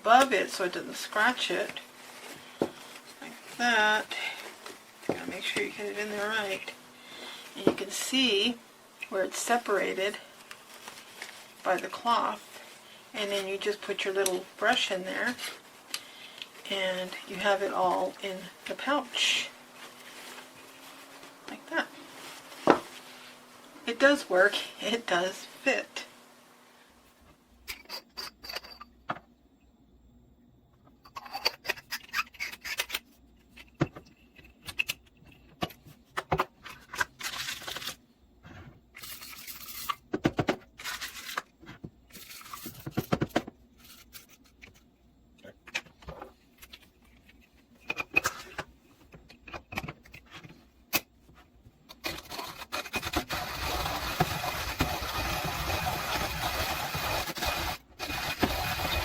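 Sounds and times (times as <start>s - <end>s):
coffee grinder grinding beans: 0.1s - 26.1s, 36.7s - 38.0s, 40.8s - 41.5s, 51.9s - 59.0s.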